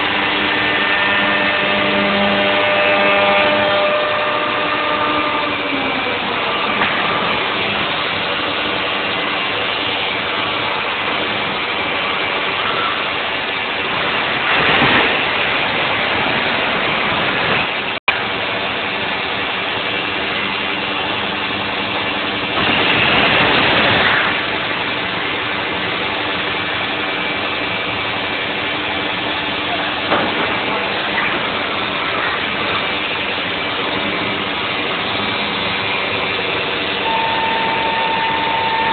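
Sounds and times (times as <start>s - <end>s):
router spindle machining whine: 0.0s - 11.0s, 31.8s - 38.9s.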